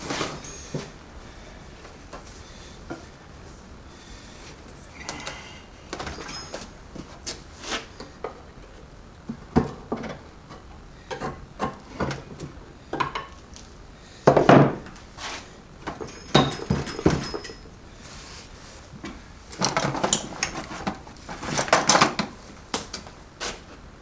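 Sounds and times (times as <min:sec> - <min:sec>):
metal parts and tools clattering: 0:06.0 - 0:06.7, 0:15.8 - 0:17.7.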